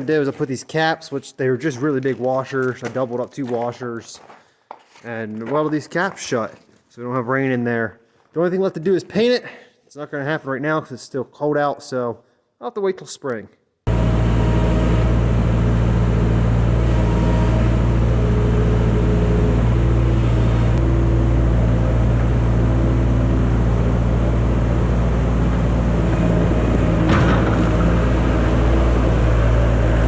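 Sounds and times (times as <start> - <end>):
skid steer engine idling: 13.9 - 30.0.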